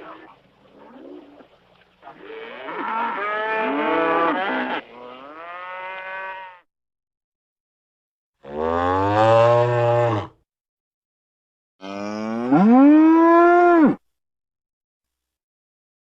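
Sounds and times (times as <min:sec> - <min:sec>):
cow mooing: 0:02.2 - 0:06.6, 0:08.4 - 0:10.4, 0:11.8 - 0:14.0.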